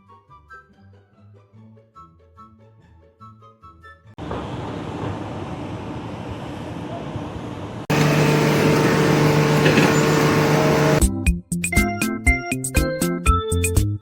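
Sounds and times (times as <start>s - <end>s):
music: 0.0s - 4.2s, 11.0s - 14.0s
engine running with steady hum: 7.9s - 11.0s
machine noise: 7.9s - 11.0s.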